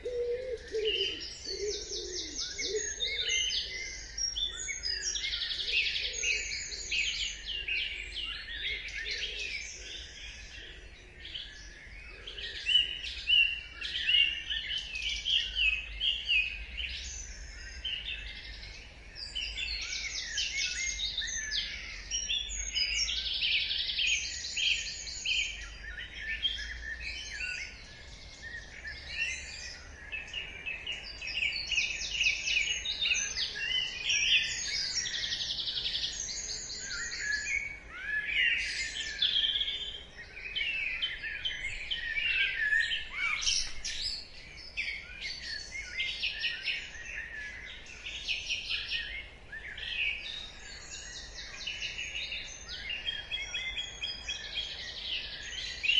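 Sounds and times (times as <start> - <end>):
songbirds singing: 0.0 - 55.9.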